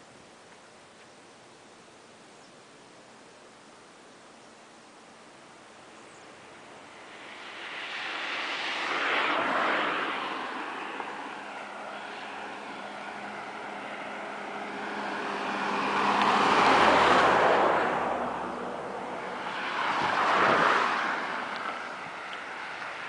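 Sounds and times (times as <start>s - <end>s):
vehicles passing by: 5.0s - 23.0s.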